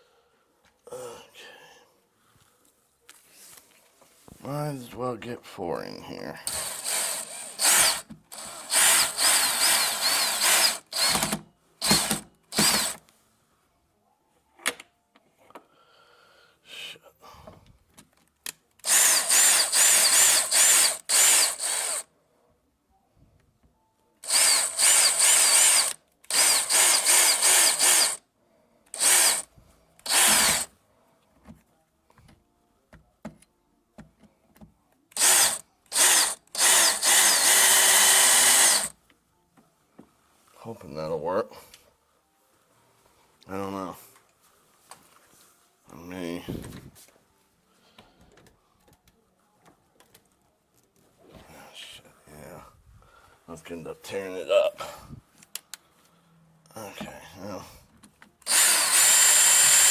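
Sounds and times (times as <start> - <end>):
power drill driving screws: 6.5 - 13.0, 18.8 - 22.1, 24.2 - 28.2, 28.9 - 30.7, 35.1 - 39.0, 58.4 - 59.9.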